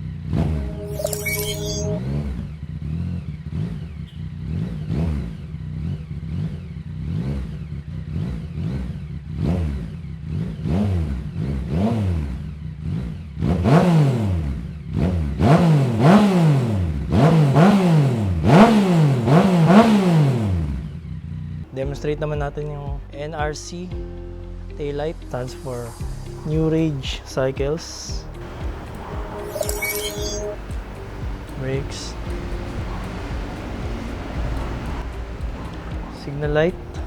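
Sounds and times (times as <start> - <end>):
motorcycle engine revving: 0.0 - 21.8, 26.1 - 37.0.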